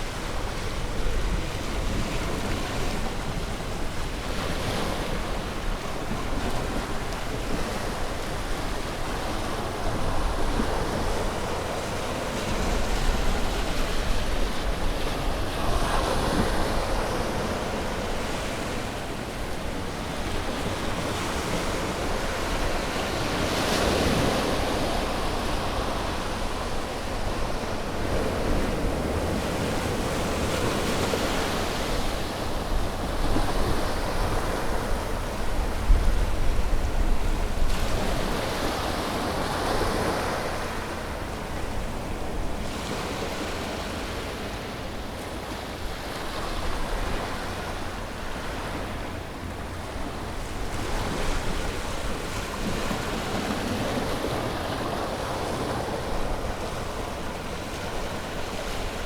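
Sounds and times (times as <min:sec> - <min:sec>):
ocean waves breaking: 0:00.0 - 0:59.0
wind on microphone: 0:20.3 - 0:43.1.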